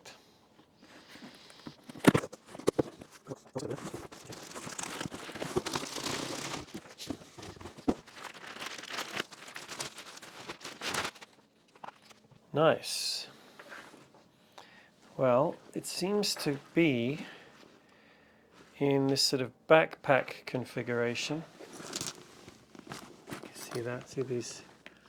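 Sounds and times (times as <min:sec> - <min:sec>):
packaging crinkling: 0:01.6 - 0:12.2
tape and cardboard tearing: 0:01.8 - 0:11.2.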